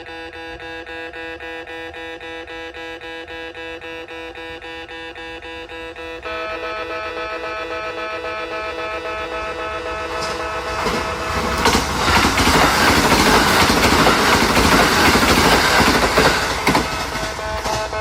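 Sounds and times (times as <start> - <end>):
train wheels clattering on rails: 9.6 - 18.0.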